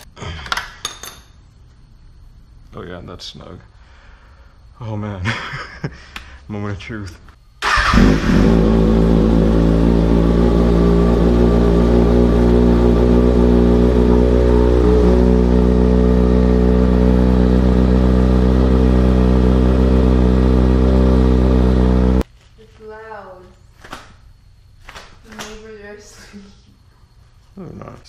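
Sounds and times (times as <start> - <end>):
motorcycle engine idling: 7.6 - 22.2.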